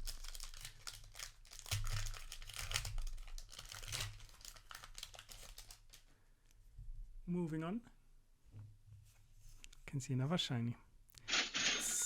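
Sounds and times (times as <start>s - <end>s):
foil wrapper crinkling and tearing: 0.0s - 6.0s.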